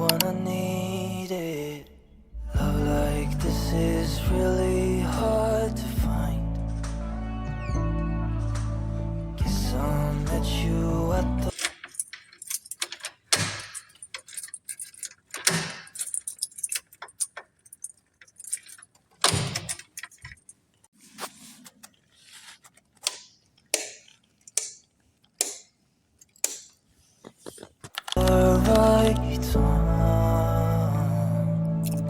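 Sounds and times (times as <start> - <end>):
objects being handled: 11.5 - 29.2.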